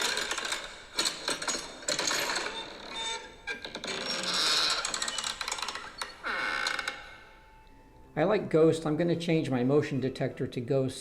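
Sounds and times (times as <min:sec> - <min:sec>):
door creaking: 0:00.0 - 0:07.6.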